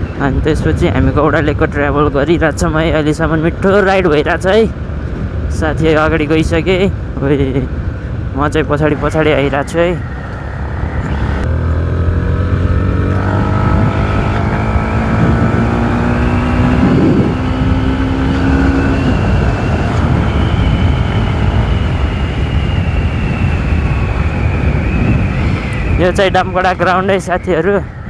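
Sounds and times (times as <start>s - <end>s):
wind noise on microphone: 0.0s - 28.0s
motorcycle engine running: 10.8s - 22.7s.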